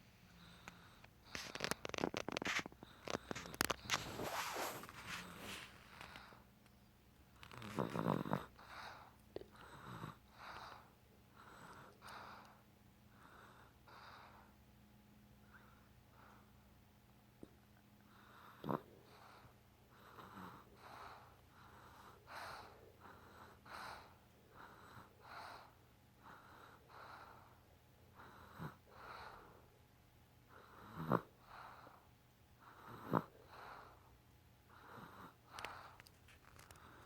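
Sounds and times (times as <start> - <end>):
baby snoring: 7.4 - 9.0, 18.5 - 19.4, 32.8 - 34.0.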